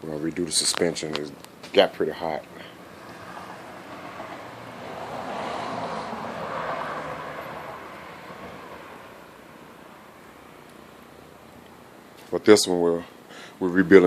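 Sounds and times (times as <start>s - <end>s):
vehicle passing: 2.6s - 11.9s.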